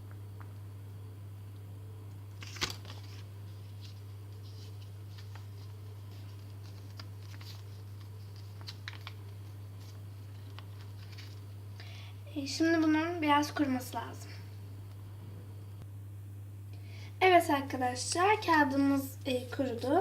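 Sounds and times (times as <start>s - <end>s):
steady low hum: 0.0s - 20.0s
paper ticks and rustles: 2.4s - 11.5s.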